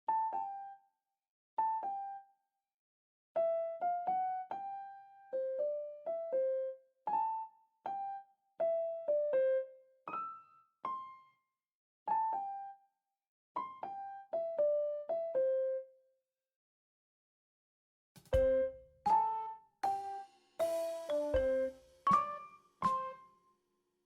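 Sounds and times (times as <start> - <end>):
slow electric keyboard melody: 0.1 - 0.9, 1.6 - 2.3, 3.4 - 11.4, 13.6 - 16.0, 18.4 - 23.3.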